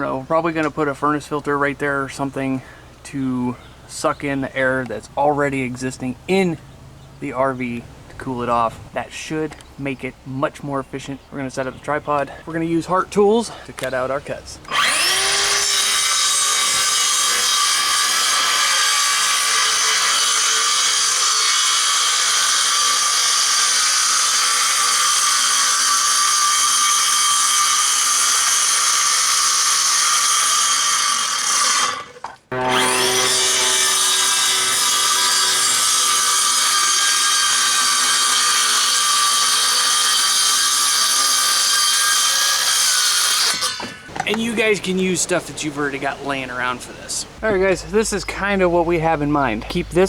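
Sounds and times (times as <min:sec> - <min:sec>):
power saw cutting plywood: 0:14.6 - 0:44.5.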